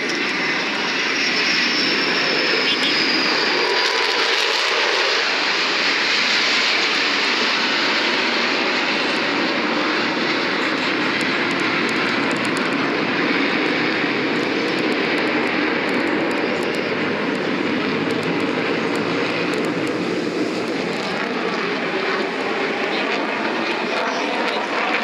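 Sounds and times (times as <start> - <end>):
jet roar: 0.0 - 25.0.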